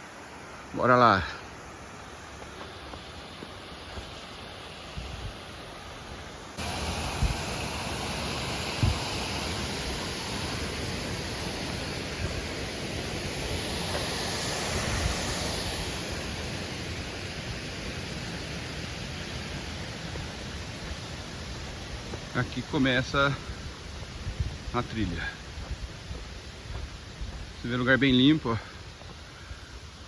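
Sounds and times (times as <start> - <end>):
waterfall roaring: 0.0 - 23.6.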